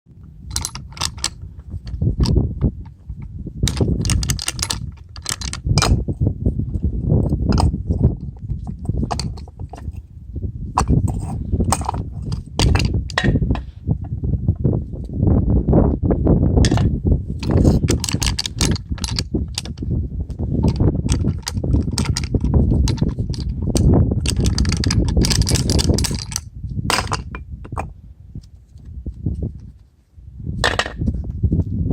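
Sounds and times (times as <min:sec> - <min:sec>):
sharp clicks and knocks: 0:00.5 - 0:06.0, 0:07.2 - 0:10.0, 0:10.8 - 0:13.7, 0:16.6 - 0:19.9, 0:20.6 - 0:27.9
metal parts clinking: 0:00.5 - 0:06.1, 0:10.8 - 0:13.3, 0:16.6 - 0:19.9, 0:20.6 - 0:27.9.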